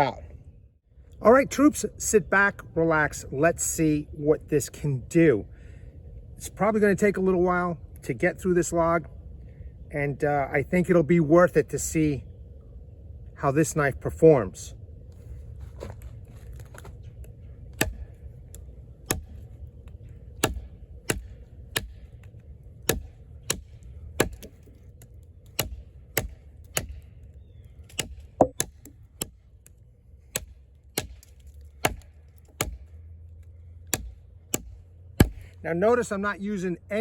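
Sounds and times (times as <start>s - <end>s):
knife chopping wooden log: 17.7s - 18.2s, 19.0s - 19.4s, 20.3s - 24.8s, 25.4s - 27.1s, 27.8s - 29.4s, 30.3s - 32.9s, 33.9s - 35.6s.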